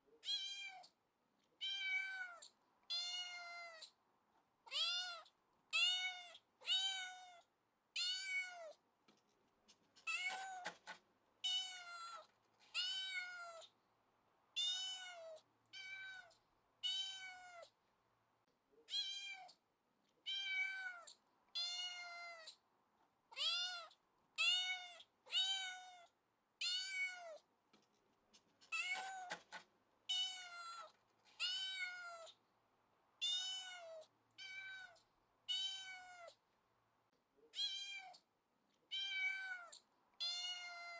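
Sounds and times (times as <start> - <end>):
cat meowing: 0.2 - 0.9, 1.6 - 3.9, 4.7 - 8.8, 11.4 - 13.7, 14.6 - 17.7, 18.9 - 19.6, 20.2 - 22.6, 23.3 - 27.4, 30.1 - 32.4, 33.2 - 36.4, 37.5 - 38.2, 38.9 - 40.9.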